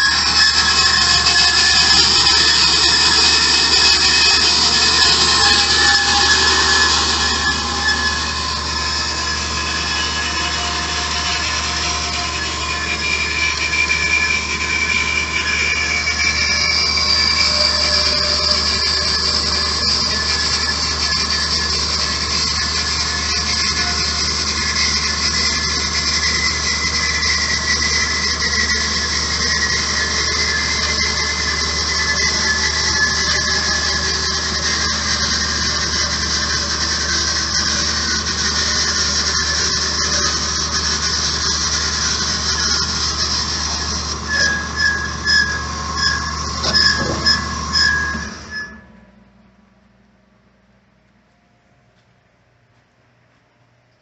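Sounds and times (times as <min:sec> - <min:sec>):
bandsaw blade screeching: 0:00.0 - 0:48.9.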